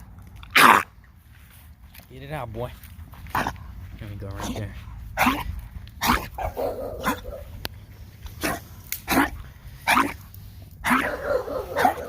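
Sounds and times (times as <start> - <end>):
dog barking: 6.0 - 7.6, 9.9 - 10.2, 10.8 - 12.0.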